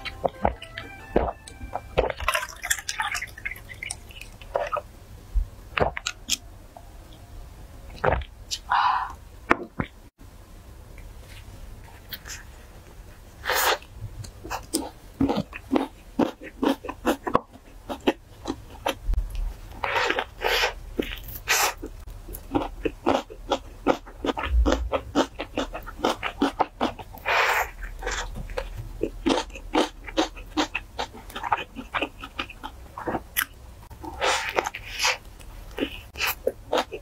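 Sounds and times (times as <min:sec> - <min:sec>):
wet chewing: 0:19.8 - 0:37.0.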